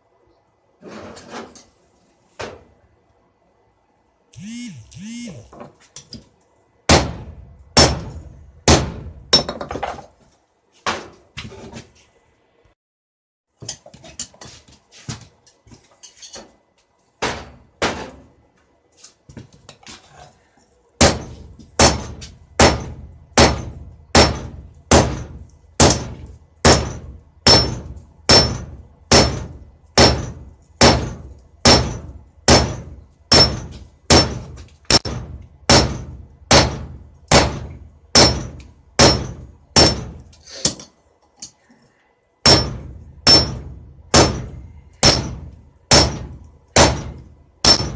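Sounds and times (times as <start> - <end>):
hammer striking anvil: 6.9 - 9.6, 21.0 - 40.8, 42.4 - 47.9.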